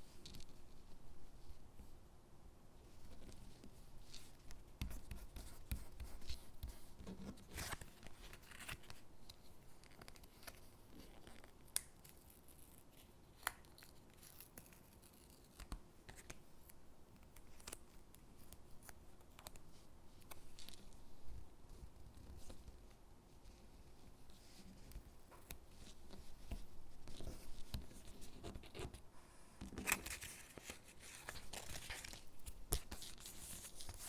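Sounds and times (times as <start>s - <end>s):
paper rustling and peeling: 29.7s - 34.0s.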